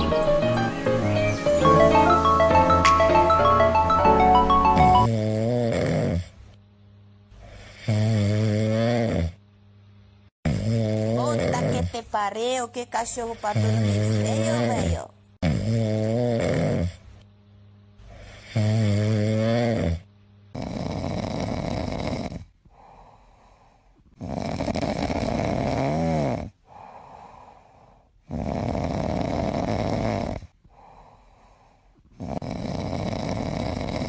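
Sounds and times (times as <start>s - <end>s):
dog snoring: 5.0s - 6.6s, 7.4s - 9.4s, 10.4s - 11.9s, 15.4s - 17.2s, 18.0s - 23.2s, 24.1s - 31.5s, 32.1s - 34.0s.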